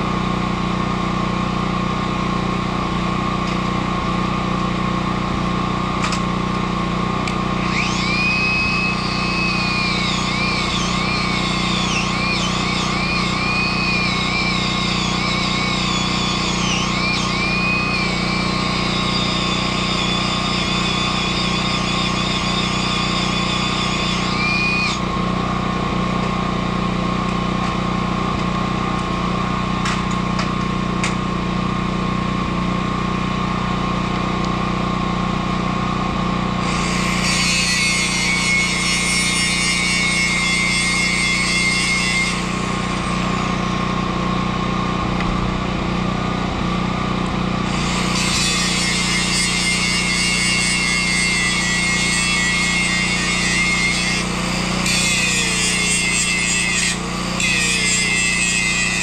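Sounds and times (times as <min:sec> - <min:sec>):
angle grinder motor running: 0:00.1 - 0:59.0
high grinding of disc on metal: 0:07.6 - 0:25.2, 0:36.6 - 0:44.4, 0:47.6 - 0:59.0.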